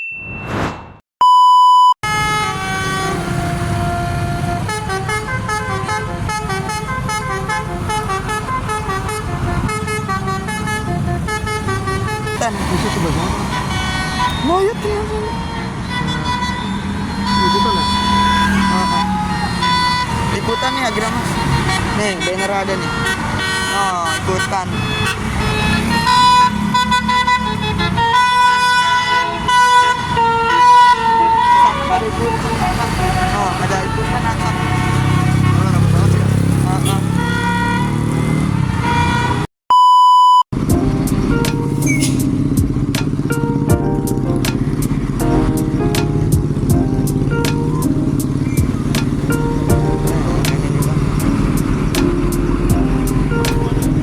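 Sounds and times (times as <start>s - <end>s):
electronic beep: 0.0s - 2.0s, 39.7s - 40.4s, 41.8s - 42.2s
bus air horn melody: 2.0s - 39.5s, 40.6s - 54.0s
engines rumbling: 2.0s - 39.5s, 40.5s - 54.0s.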